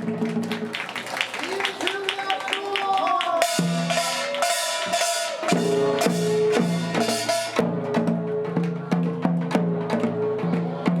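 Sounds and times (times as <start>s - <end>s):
drums struck in fast rhythm: 3.3s - 11.0s
gongs ringing: 3.4s - 7.6s.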